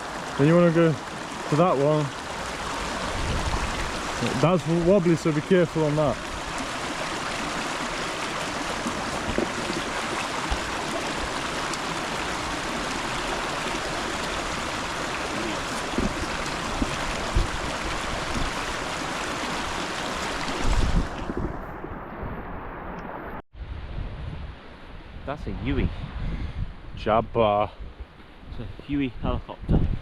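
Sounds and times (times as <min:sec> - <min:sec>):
fast-flowing stream rushing: 0:00.0 - 0:21.2
short low thumps: 0:15.8 - 0:18.6.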